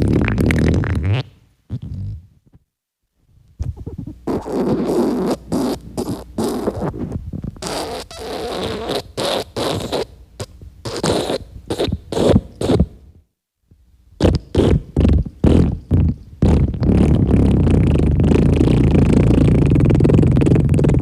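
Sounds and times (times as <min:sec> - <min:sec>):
buzzy sputtering farts: 0:00.0 - 0:02.4, 0:03.6 - 0:13.0, 0:14.2 - 0:21.0.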